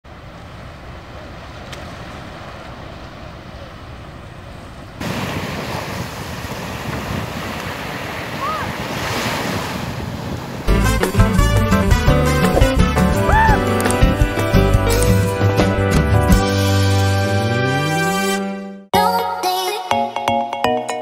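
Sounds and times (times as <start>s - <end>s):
sea waves washing onto beach: 0.1s - 15.3s
wind buffeting microphone: 0.6s - 15.3s.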